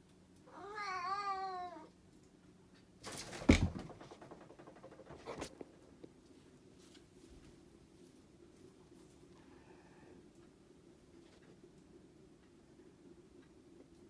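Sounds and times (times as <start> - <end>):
cat meowing: 0.5 - 1.9
thump: 3.4 - 4.1.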